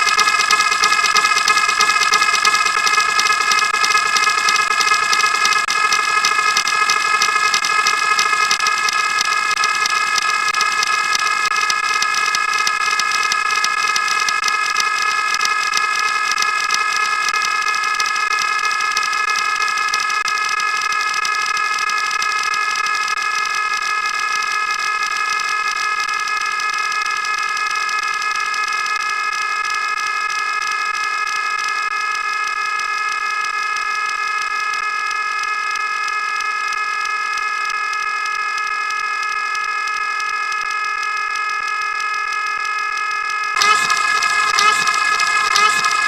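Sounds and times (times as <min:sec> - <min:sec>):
loud blaring multi-pitch tone: 0:42.0 - 0:46.0.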